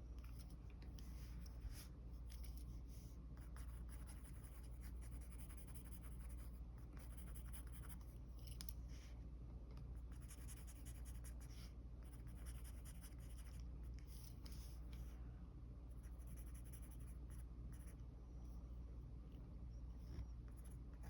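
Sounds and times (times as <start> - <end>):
steady low hum: 0.0 - 21.0
pencil scratching on paper: 1.0 - 8.0, 10.1 - 14.7.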